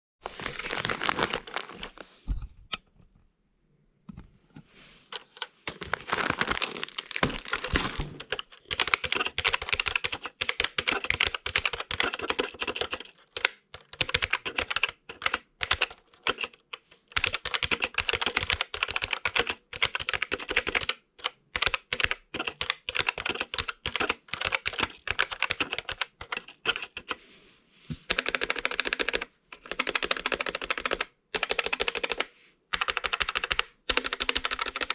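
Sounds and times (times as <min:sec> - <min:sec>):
keyboard key clicks typing: 0:08.2 - 0:16.6, 0:17.2 - 0:27.2.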